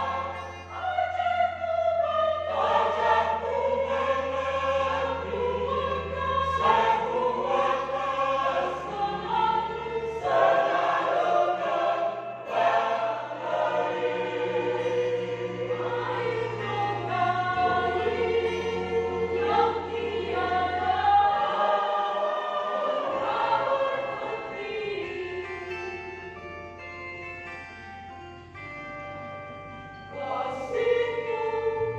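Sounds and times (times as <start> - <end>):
church choir singing: 0.0 - 27.6, 28.5 - 31.9.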